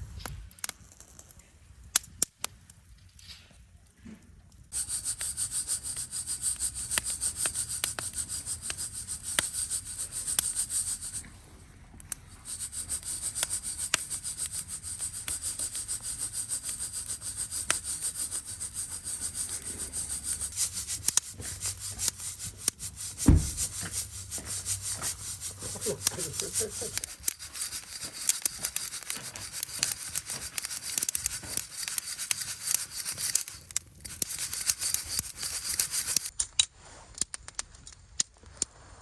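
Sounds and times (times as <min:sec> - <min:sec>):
coffee beans rattling in mesh roaster: 0:04.8 - 0:11.2, 0:12.2 - 0:36.3
sharp clicks: 0:04.8 - 0:11.2, 0:12.0 - 0:38.3.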